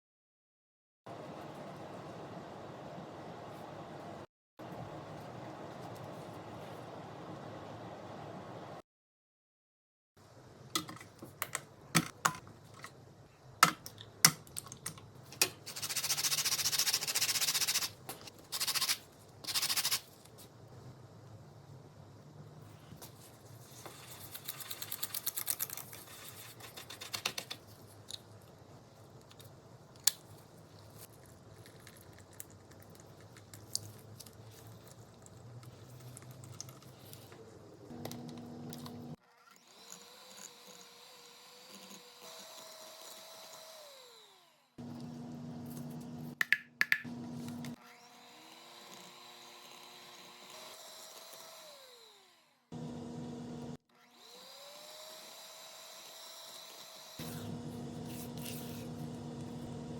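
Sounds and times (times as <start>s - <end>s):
small appliance motor humming: 37.9s - 46.4s, 47.1s - 59.9s
quick kitchen taps and clatter: 46.4s - 47.1s.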